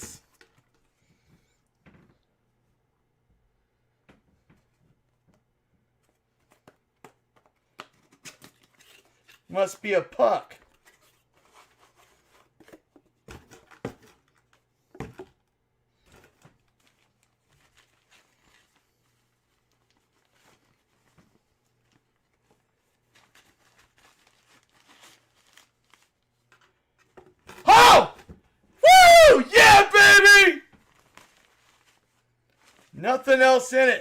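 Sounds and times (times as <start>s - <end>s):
packaging tearing and crinkling: 23.1s - 26.3s.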